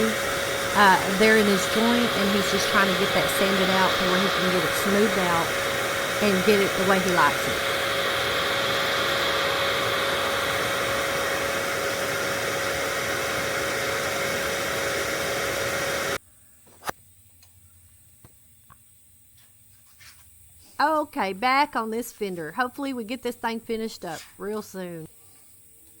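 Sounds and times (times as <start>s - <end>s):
motor whirring: 0.0s - 12.1s.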